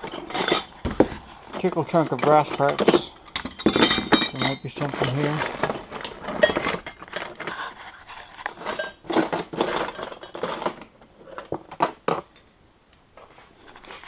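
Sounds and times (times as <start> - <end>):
brass fittings clinking: 1.5 - 5.5.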